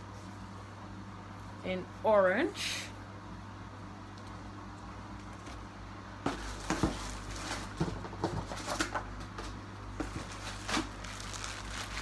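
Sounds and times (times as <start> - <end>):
plastic packaging crinkling: 6.4 - 9.0, 10.0 - 12.0.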